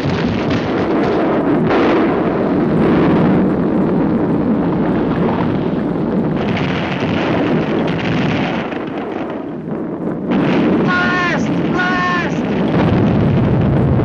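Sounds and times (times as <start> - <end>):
volcano rumbling: 0.0 - 14.0.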